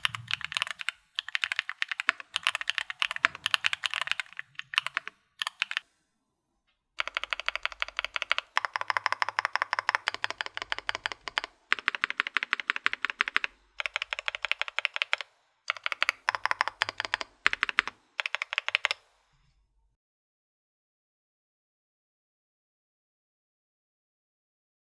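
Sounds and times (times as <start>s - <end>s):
mechanical keyboard typing: 0.0s - 5.8s, 7.0s - 19.0s.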